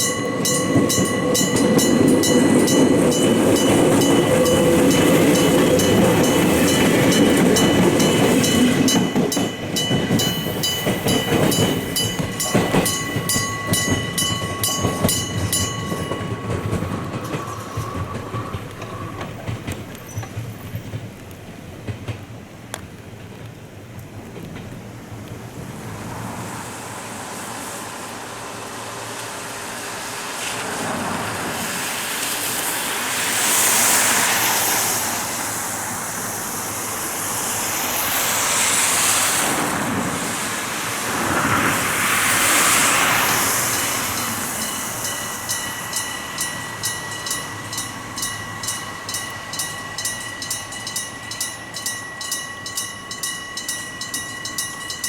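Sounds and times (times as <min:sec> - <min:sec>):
level crossing warning bells: 0:00.0 - 0:20.4, 0:41.6 - 0:55.0
electric train passing: 0:00.0 - 0:55.0.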